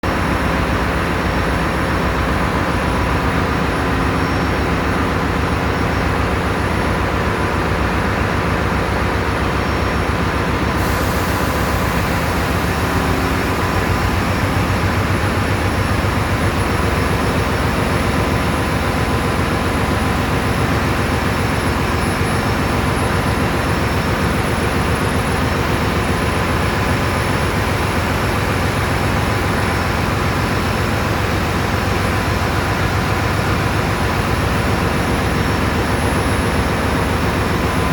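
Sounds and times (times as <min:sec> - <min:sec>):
diesel engine rumbling: 0:00.1 - 0:25.0
high hiss: 0:10.8 - 0:16.4.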